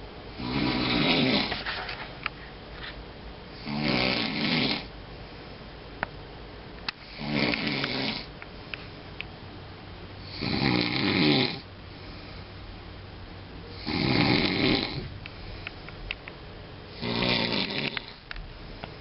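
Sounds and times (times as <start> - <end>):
person snoring: 0.4 - 1.6, 3.6 - 4.9, 7.0 - 8.3, 10.2 - 11.7, 13.7 - 15.1, 16.9 - 18.2
quiet breathing: 5.1 - 5.8, 11.8 - 12.9, 15.0 - 16.2.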